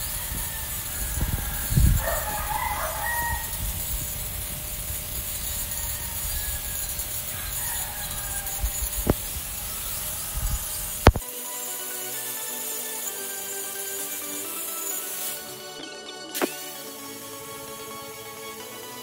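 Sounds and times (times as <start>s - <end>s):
rooster crowing: 0.0s - 3.8s, 5.3s - 11.1s
steady low hiss: 0.0s - 19.0s.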